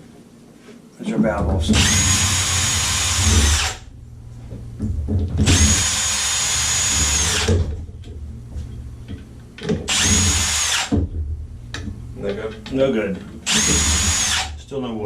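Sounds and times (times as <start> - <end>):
power drill motor whine: 1.8 - 3.9, 5.5 - 7.6, 9.9 - 10.9, 13.4 - 14.5.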